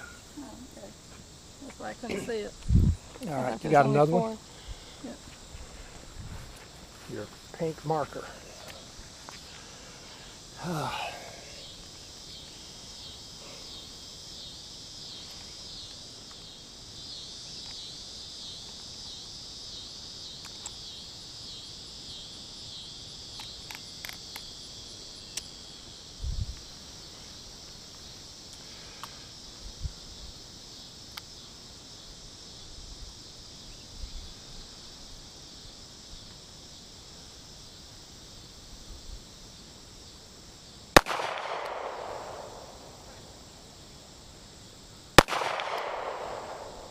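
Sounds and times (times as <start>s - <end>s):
insects trilling: 0.0s - 46.9s
handgun shot: 41.0s - 42.6s, 45.2s - 46.8s.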